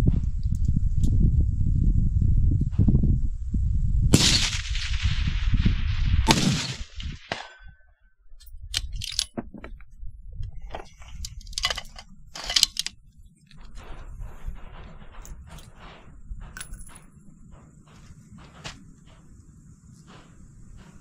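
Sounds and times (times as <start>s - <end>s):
rifle shots echoing: 4.2s - 5.3s, 6.2s - 7.7s
metallic clicks and clinks: 8.4s - 9.4s, 11.0s - 13.0s, 15.1s - 17.2s.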